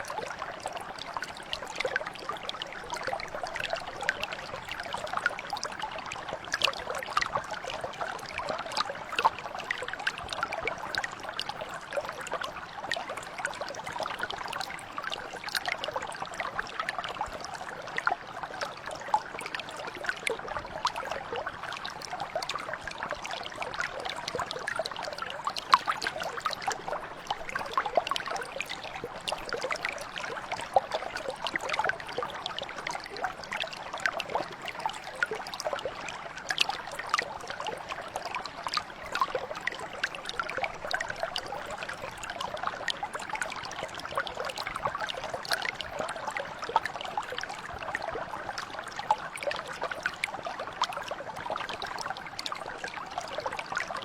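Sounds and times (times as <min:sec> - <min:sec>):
stream babbling over stones: 0:00.0 - 0:54.0.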